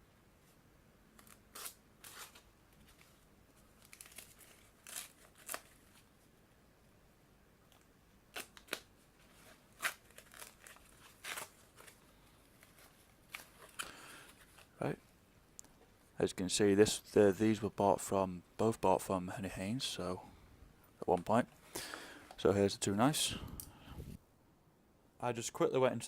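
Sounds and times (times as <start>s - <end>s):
packaging crinkling and tearing: 1.2s - 6.1s, 7.7s - 14.7s.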